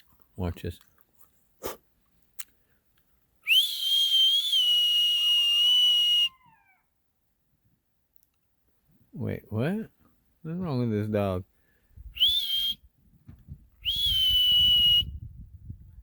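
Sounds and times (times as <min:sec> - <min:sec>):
long high whistle: 0:03.4 - 0:06.4, 0:12.2 - 0:12.8, 0:13.8 - 0:15.2.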